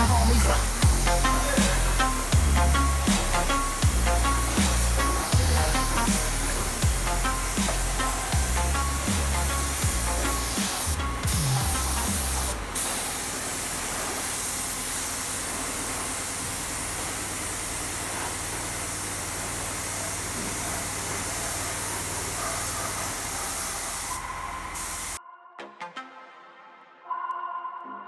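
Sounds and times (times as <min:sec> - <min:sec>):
low music notes: 0:00.0 - 0:12.5
hissing spray: 0:00.0 - 0:25.2.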